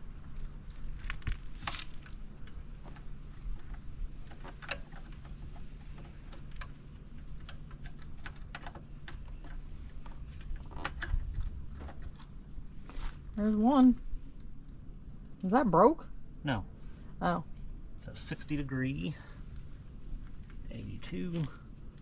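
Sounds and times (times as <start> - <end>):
steady low hum: 0.0 - 22.0
hand tools clicking and tapping: 2.4 - 12.2.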